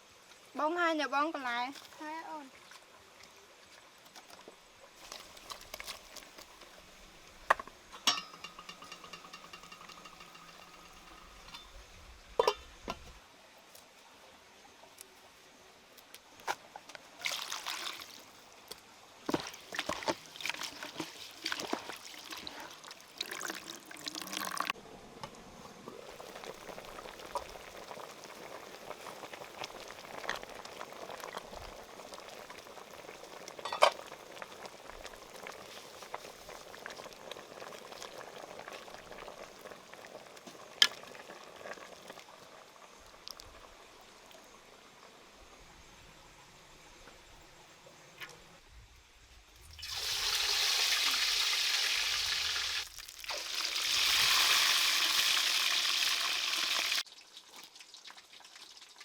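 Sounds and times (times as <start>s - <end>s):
liquid splashing and pouring: 17.2s - 18.4s, 19.3s - 24.8s, 49.6s - 59.0s
bubbling hiss: 19.2s - 47.7s, 48.9s - 57.1s.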